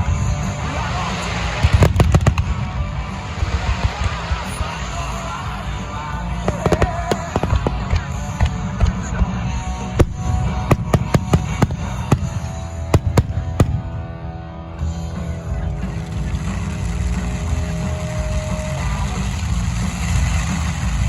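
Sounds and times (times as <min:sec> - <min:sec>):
music over loudspeakers: 0:00.0 - 0:16.9
fireworks cracking: 0:00.8 - 0:04.4, 0:06.3 - 0:09.3, 0:10.0 - 0:14.2, 0:16.0 - 0:21.0.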